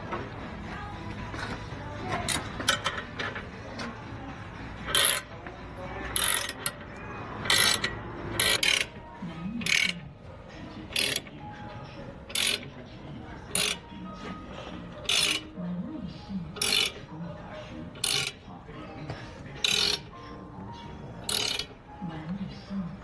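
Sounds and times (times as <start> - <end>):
ratchet wrench clicking: 4.9 - 5.3, 6.1 - 6.8, 7.4 - 9.0, 9.6 - 10.0, 10.9 - 11.3, 12.3 - 12.7, 13.5 - 13.8, 15.0 - 15.5, 16.6 - 17.0, 18.0 - 18.4, 19.6 - 20.1, 21.3 - 21.7.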